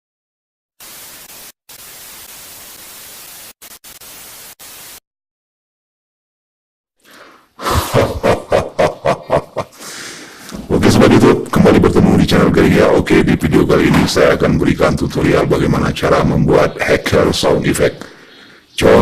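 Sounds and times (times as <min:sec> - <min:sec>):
electronic white-noise static: 0:00.8 - 0:05.0.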